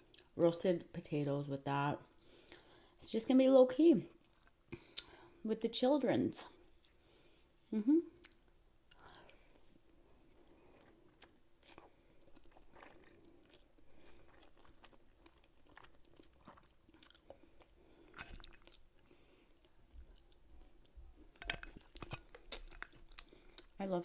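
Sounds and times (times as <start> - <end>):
faint steady hum: 0.0 - 24.0
close-up chewing: 4.2 - 5.2, 6.7 - 23.9.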